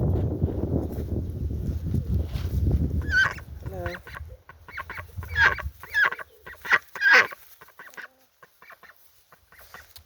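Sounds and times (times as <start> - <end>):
goose honking: 3.0 - 9.9.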